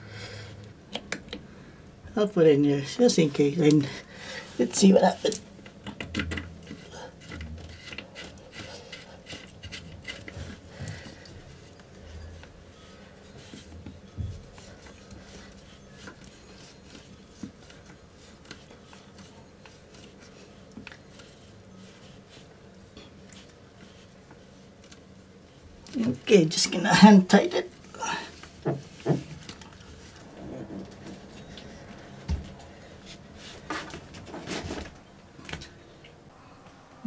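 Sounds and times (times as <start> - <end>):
faint steady hum: 0.0 - 37.0
plumbing parts clicking and tapping: 4.8 - 12.6.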